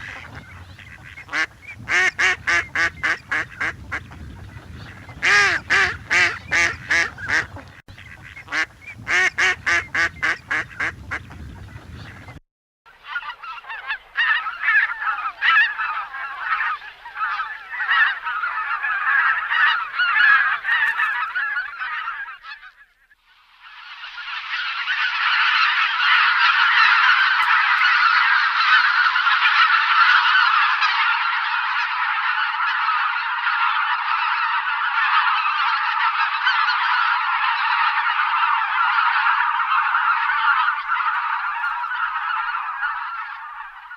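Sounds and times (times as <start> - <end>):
geese honking: 0.0 - 43.9.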